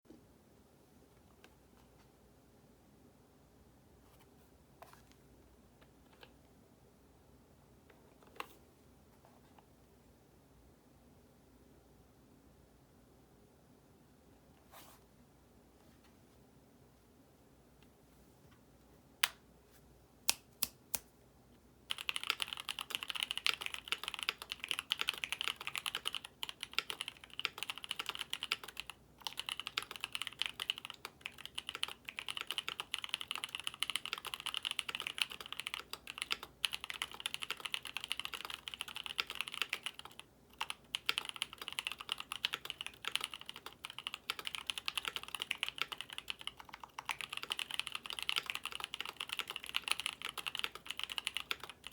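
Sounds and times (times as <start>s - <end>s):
typing on mechanical keyboard: 21.9s - 51.9s.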